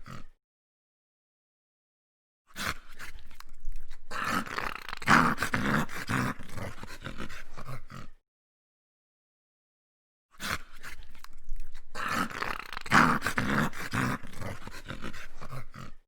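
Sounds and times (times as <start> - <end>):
dog growling: 0.0 - 0.4, 2.6 - 8.2, 10.4 - 16.0.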